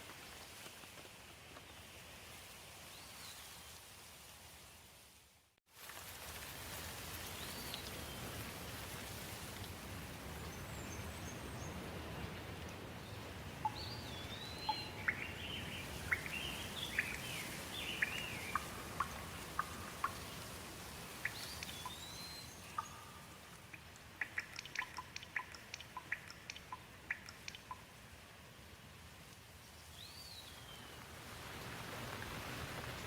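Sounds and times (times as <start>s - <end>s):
steady rain falling: 0.0s - 33.0s
songbirds chirping: 10.2s - 31.1s.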